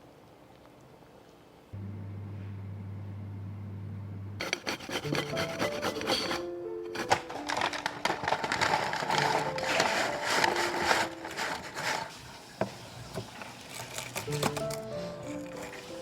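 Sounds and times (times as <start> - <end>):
low steady hum: 0.0 - 4.6
rapid rasping and scraping strokes: 4.4 - 7.6, 8.7 - 12.2
soft background music: 4.5 - 16.0.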